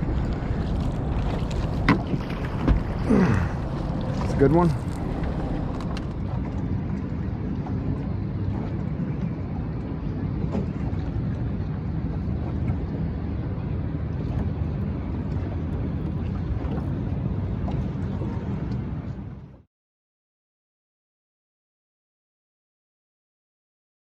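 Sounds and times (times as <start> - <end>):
wind noise on microphone: 0.0 - 19.5
small boat on water: 0.0 - 19.7.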